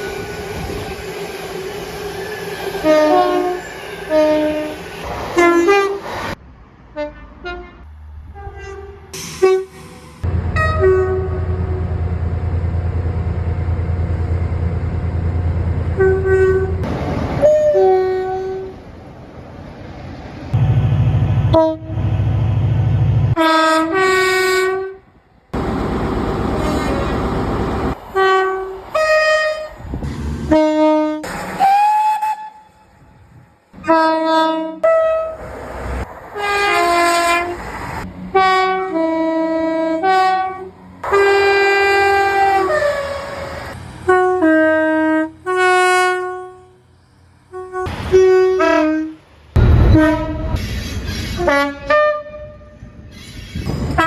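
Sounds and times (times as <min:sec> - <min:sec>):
rumbling passing trains: 0:00.0 - 0:54.0
train horn blasts: 0:02.8 - 0:04.8, 0:10.5 - 0:12.0, 0:16.0 - 0:16.8, 0:17.4 - 0:18.7, 0:21.4 - 0:22.2, 0:23.3 - 0:27.3, 0:30.4 - 0:35.4, 0:36.4 - 0:37.6, 0:38.3 - 0:43.4, 0:44.0 - 0:50.6, 0:51.4 - 0:53.0.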